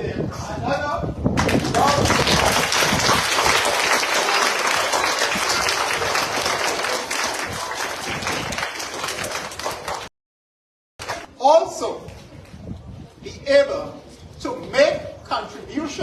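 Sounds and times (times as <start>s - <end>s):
children applauding: 1.4s - 10.1s.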